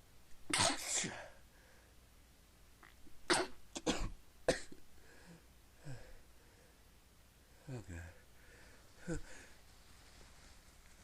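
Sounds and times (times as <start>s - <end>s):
person stifling sneezes: 0.5s - 1.3s.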